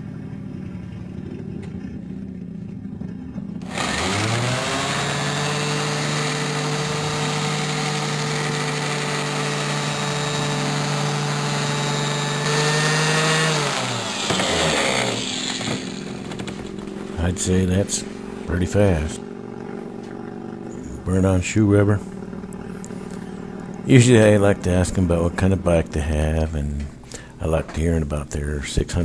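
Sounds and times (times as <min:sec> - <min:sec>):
orbital sander running: 0:03.6 - 0:26.4.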